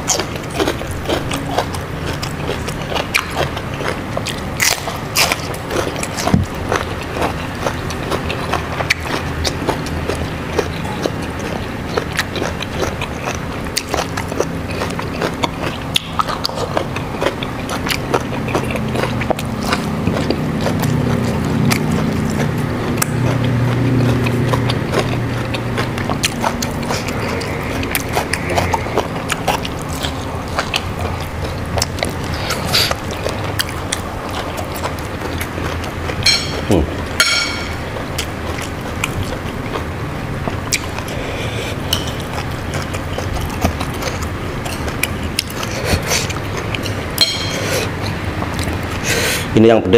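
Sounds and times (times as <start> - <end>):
chewing and crunching vegetables: 0.0 - 49.9
low steady drone: 0.0 - 49.9.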